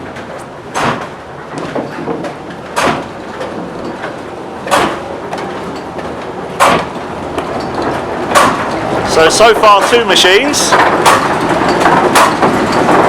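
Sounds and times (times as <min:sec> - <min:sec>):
mill machinery rumble: 0:00.0 - 0:13.0
heavy wooden knock: 0:00.8 - 0:03.1.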